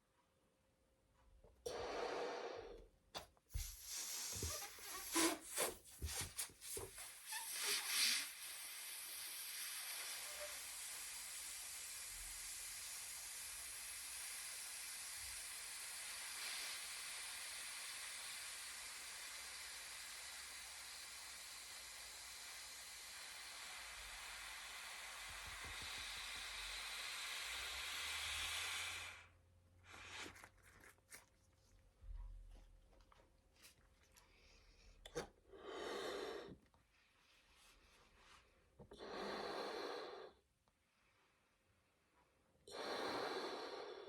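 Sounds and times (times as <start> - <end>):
breath: 1.6 - 2.9, 12.8 - 30.5, 34.2 - 41.7, 42.7 - 44.0
air hissing from balloon: 1.7 - 2.8, 3.5 - 29.3, 42.7 - 44.0
rubber balloon squeaking: 3.6 - 8.4.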